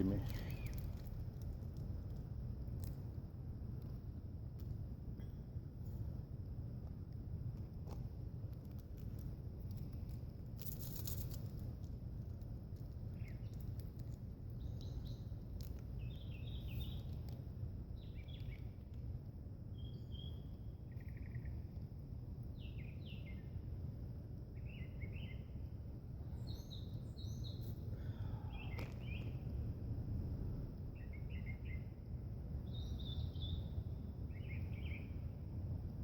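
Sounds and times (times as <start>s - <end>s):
faint high insect-like tone: 0.0s - 3.2s, 9.6s - 36.0s
low background rumble: 0.0s - 36.0s
birds chirping: 26.2s - 29.5s.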